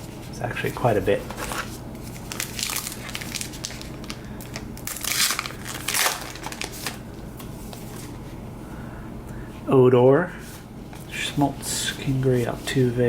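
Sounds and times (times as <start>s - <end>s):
plastic wrapper crinkling: 1.3s - 7.0s.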